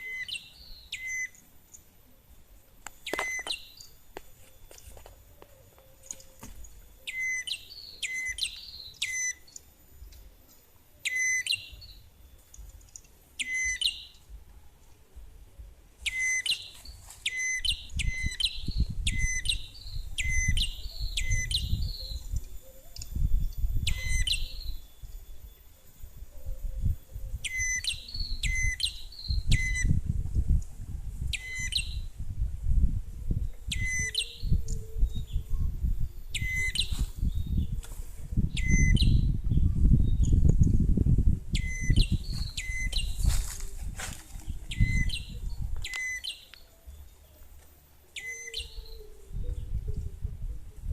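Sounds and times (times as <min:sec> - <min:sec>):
small birds calling: 0:00.0 - 0:14.6, 0:15.6 - 0:32.2, 0:33.3 - 0:40.9, 0:41.5 - 0:50.9
wind or handling rumble: 0:14.2 - 0:46.2.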